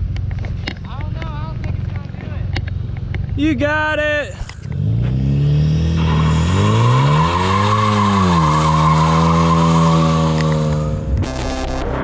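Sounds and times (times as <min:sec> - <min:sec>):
turbocharged engine revving: 0:04.6 - 0:12.0.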